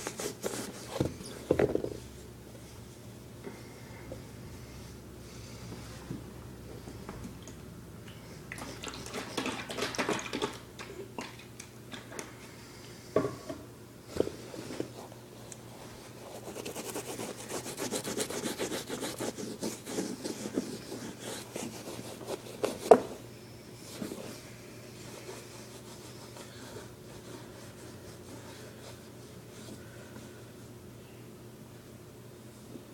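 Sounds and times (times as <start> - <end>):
cloth scrubbing leather: 16.1 - 22.8.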